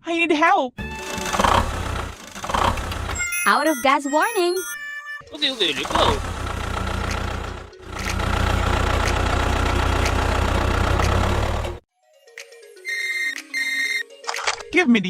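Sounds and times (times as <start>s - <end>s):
car engine chugging: 0.8s - 3.2s, 5.4s - 11.8s.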